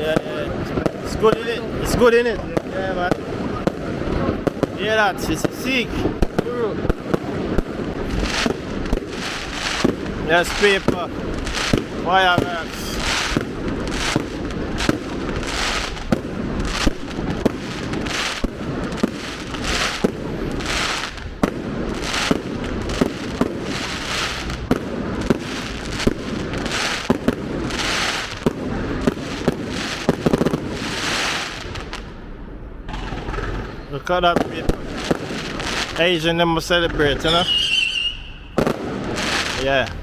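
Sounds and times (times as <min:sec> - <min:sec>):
fireworks bangs: 0:00.0 - 0:40.0
fireworks crackling hiss: 0:00.0 - 0:40.0.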